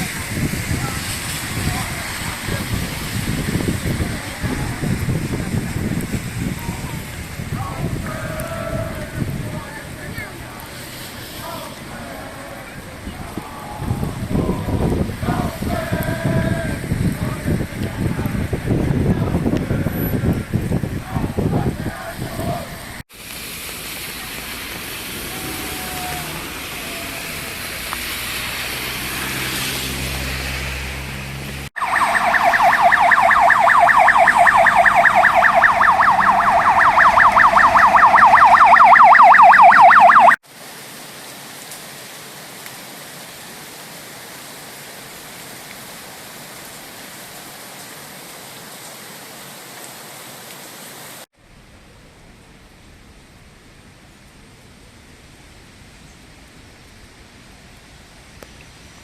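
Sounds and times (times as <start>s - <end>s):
steady rushing noise: 0.0s - 29.3s, 31.7s - 40.4s
siren warbling rapidly: 31.8s - 40.4s.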